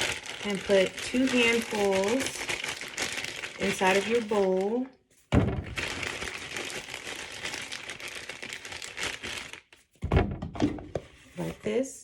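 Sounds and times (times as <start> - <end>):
plastic bag crinkling: 0.0 - 10.0
low thump: 5.3 - 5.8.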